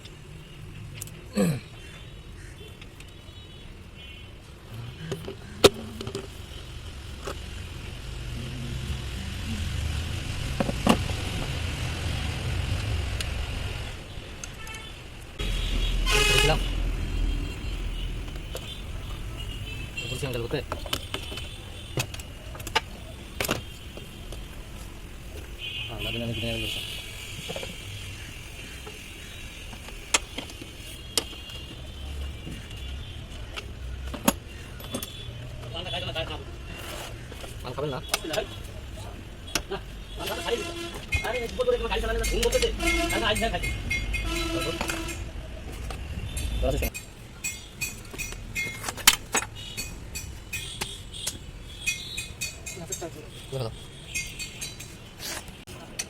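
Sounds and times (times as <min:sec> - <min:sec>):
vehicle engine rumble: 0:04.7 - 0:14.2
sharp metallic knocks: 0:42.1 - 0:45.2, 0:46.4 - 0:53.2.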